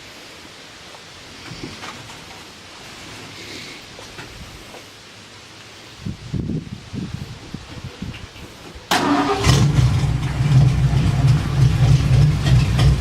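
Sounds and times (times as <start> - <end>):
engine running low rumble: 6.1 - 13.0
starter motor cranking engine: 8.9 - 13.0.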